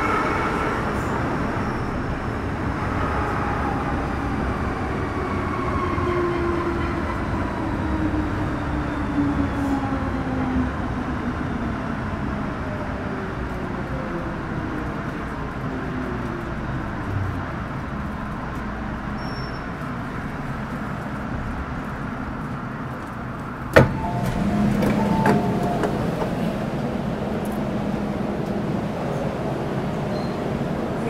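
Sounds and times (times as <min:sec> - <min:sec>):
train running noise: 0:00.0 - 0:31.0
whining traction motors: 0:23.8 - 0:27.7.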